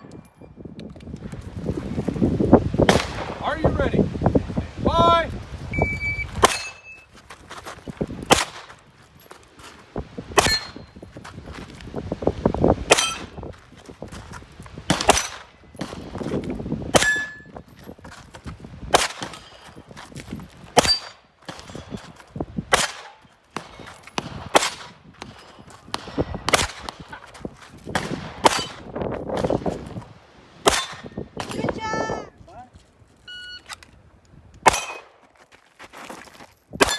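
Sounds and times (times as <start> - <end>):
gunshots: 2.8 - 3.5, 6.4 - 6.8, 8.2 - 8.8, 10.4 - 10.8, 12.9 - 13.4, 14.9 - 16.2, 18.9 - 19.5, 22.7 - 27.2, 27.9 - 29.7, 30.6 - 31.6, 34.6 - 35.2
steel targets clanging: 6.4 - 7.0, 10.4 - 11.0, 12.9 - 13.4, 17.0 - 17.6, 20.8 - 21.9.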